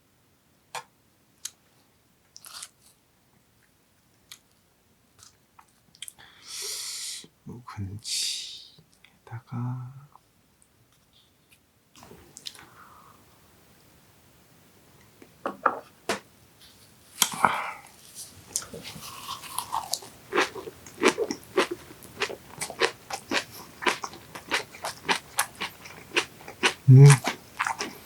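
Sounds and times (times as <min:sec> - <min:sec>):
crunchy chewing: 0:02.4 - 0:03.0, 0:18.5 - 0:28.0.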